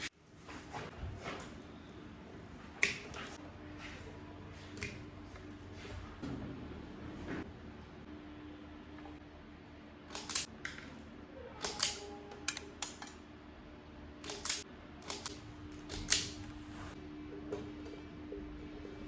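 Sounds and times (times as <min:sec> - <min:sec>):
hand tools snipping and clicking: 0:10.1 - 0:10.5, 0:11.6 - 0:13.2, 0:14.2 - 0:16.4.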